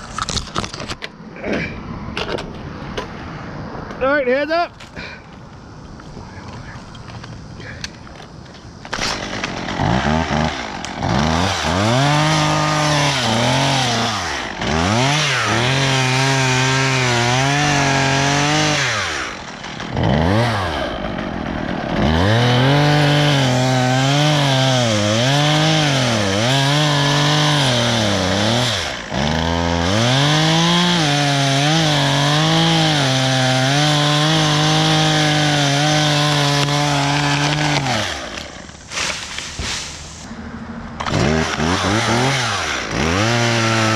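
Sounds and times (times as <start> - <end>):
chainsaw cutting wood: 8.9 - 40.3, 41.0 - 43.9.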